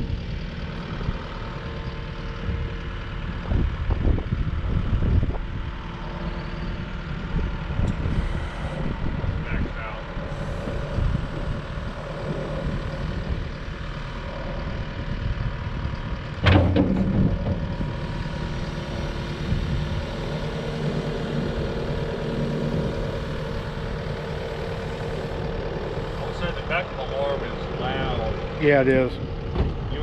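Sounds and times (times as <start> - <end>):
diesel engine running: 0.0 - 30.0
loud clunk: 16.4 - 17.9, 29.5 - 29.8.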